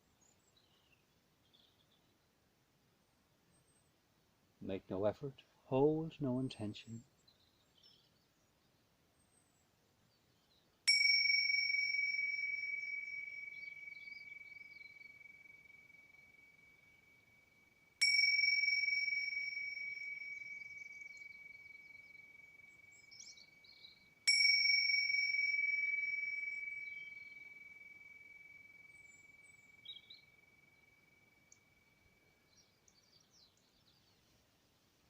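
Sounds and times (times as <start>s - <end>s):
meditation bell ringing: 10.9s - 32.7s.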